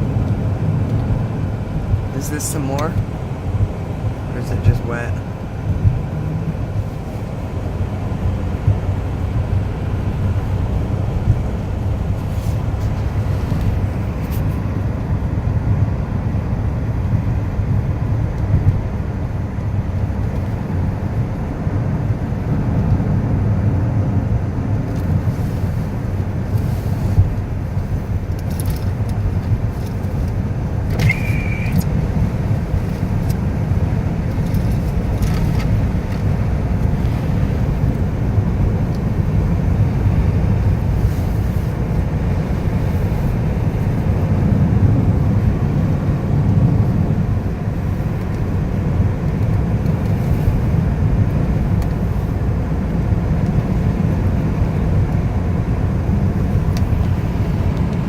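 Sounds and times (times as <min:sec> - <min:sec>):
car interior rumble: 0:00.0 - 0:58.0
high-pitched squeak: 0:31.0 - 0:31.8.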